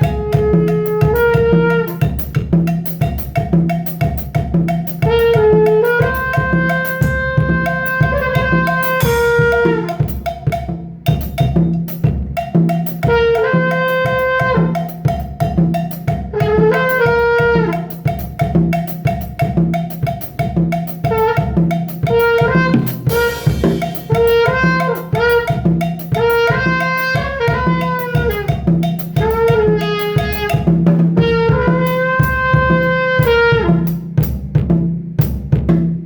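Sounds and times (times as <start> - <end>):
sax-like melody: 0.0 - 2.4, 5.0 - 10.3, 13.0 - 15.0, 16.3 - 18.1, 21.1 - 34.0
drum-kit beat: 0.0 - 36.0.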